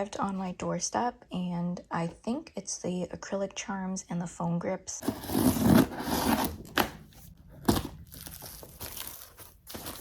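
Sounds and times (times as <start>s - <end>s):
packaging crinkling and tearing: 7.6s - 10.0s.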